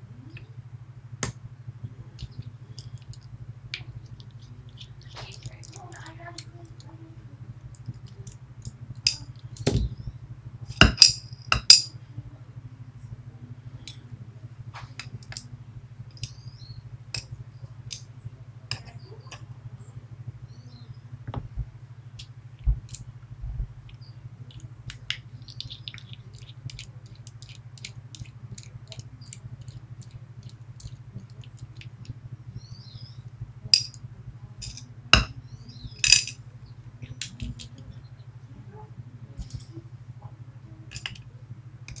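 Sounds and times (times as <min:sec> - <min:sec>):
steady low hum: 0:00.0 - 0:42.0
small metal parts clinking: 0:03.8 - 0:06.9, 0:07.7 - 0:09.8, 0:10.6 - 0:12.0, 0:15.0 - 0:15.5, 0:16.1 - 0:19.5, 0:23.9 - 0:36.5, 0:39.4 - 0:39.8, 0:40.9 - 0:41.3.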